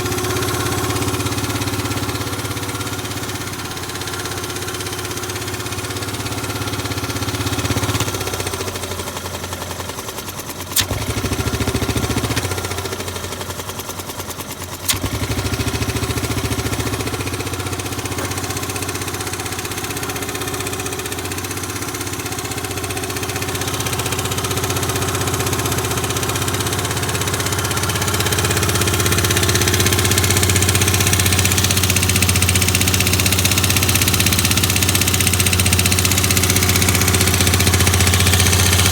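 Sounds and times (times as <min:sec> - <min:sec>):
scooter engine idling: 0:00.0 - 0:38.9
sharp clicks: 0:10.2 - 0:12.9, 0:14.8 - 0:18.5.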